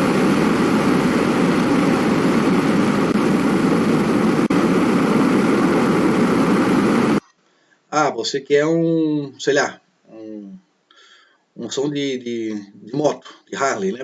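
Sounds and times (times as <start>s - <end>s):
wind and rain rushing: 0.0s - 7.2s.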